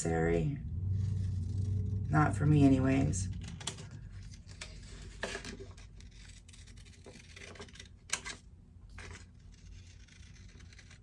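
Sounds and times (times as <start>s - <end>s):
paper rubbing: 3.3s - 8.0s, 8.9s - 11.0s
scissors snipping paper: 3.4s - 11.0s.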